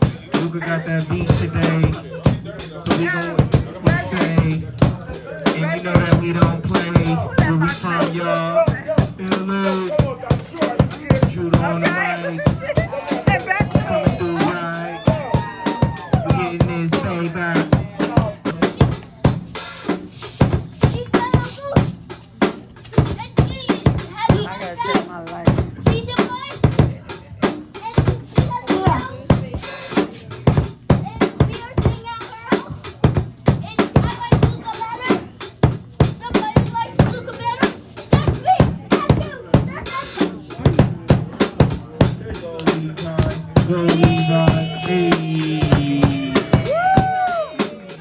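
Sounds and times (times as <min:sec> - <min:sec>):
drum-heavy music beat: 0:00.0 - 0:48.0
held pitched notes: 0:42.6 - 0:48.0
person's voice over music: 0:42.9 - 0:46.6.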